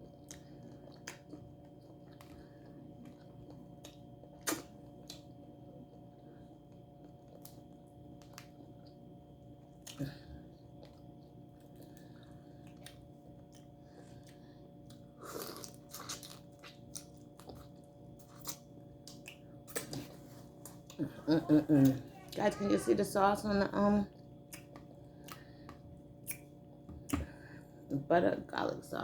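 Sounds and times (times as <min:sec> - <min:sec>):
person crunching shrimp: 0:10.7 - 0:20.0.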